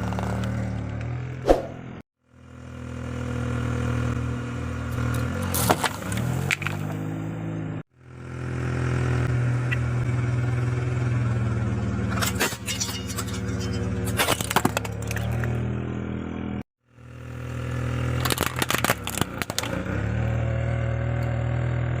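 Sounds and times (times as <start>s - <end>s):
tyre crushing objects: 5.4s - 7.0s, 14.0s - 15.5s, 18.1s - 19.8s.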